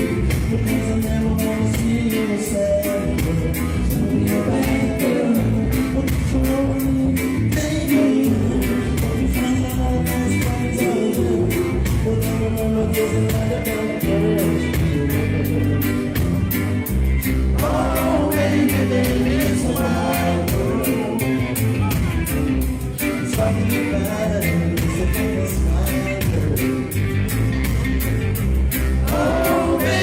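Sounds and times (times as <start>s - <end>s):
person singing: 0.0s - 16.6s, 17.6s - 21.5s, 29.0s - 30.0s
live reggae band: 0.0s - 30.0s.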